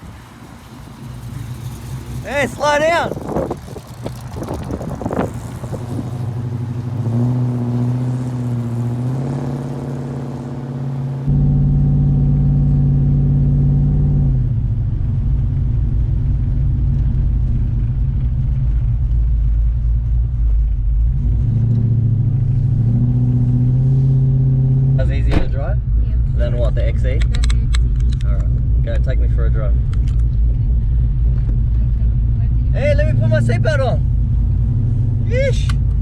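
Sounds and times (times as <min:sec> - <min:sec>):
wind rumble on microphone: 0:00.0 - 0:09.0, 0:14.2 - 0:24.3
car engine running: 0:00.0 - 0:36.0.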